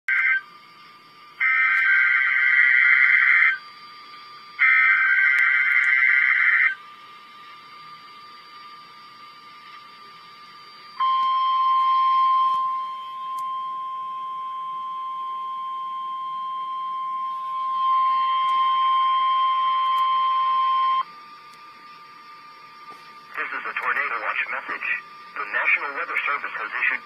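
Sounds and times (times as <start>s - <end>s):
loud steady alarm tone: 0.1s - 27.0s
quiet steady whine: 0.1s - 27.0s
radio hiss: 22.8s - 27.0s.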